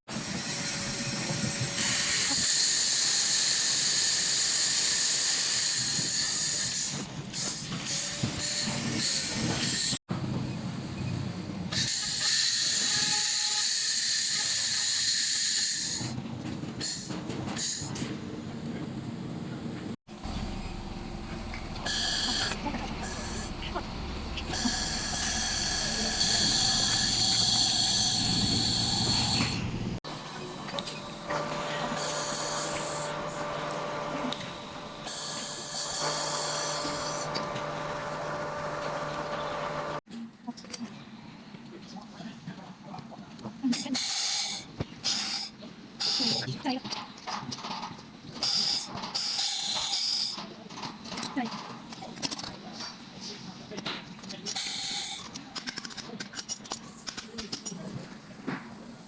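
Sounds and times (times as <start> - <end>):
low machine noise: 18.5 - 40.0
laser welder hiss: 24.6 - 29.6.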